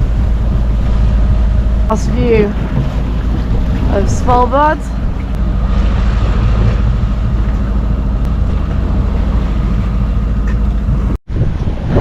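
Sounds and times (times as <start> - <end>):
low rumble and rush of yacht: 0.0 - 12.0
wind buffeting microphone: 0.0 - 12.0.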